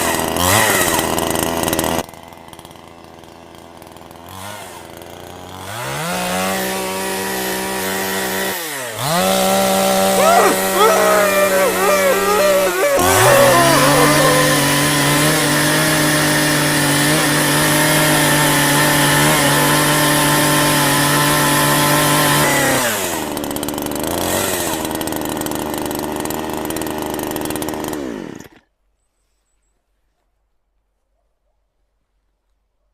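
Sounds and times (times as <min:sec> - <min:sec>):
chainsaw engine running: 0:09.0 - 0:28.6.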